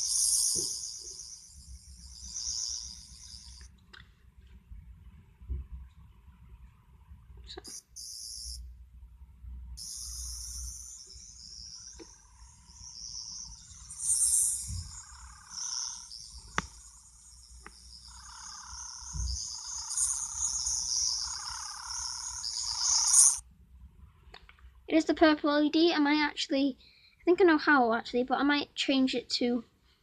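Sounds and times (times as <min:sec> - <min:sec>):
toy electronic warbling sound: 0:00.0 - 0:03.7, 0:07.7 - 0:08.6, 0:09.8 - 0:23.4.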